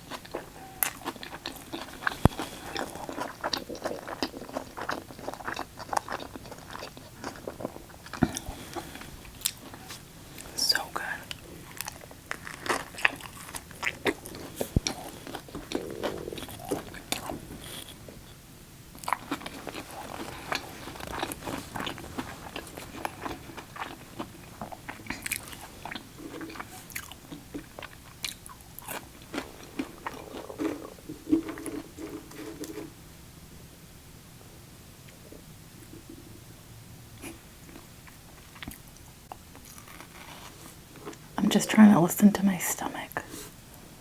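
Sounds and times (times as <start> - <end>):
person chewing crunchy food: 0.0 - 33.0, 37.2 - 41.4
wet mouth sounds: 0.3 - 18.0.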